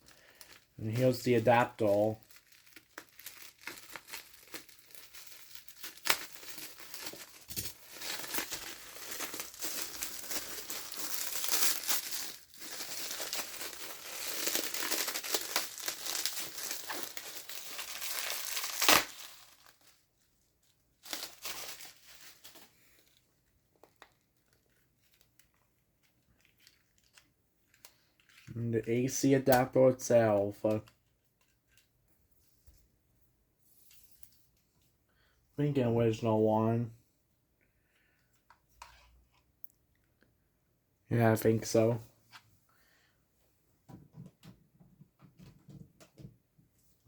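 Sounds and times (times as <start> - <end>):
packaging crinkling and rustling: 0.0 - 20.0, 21.0 - 31.9.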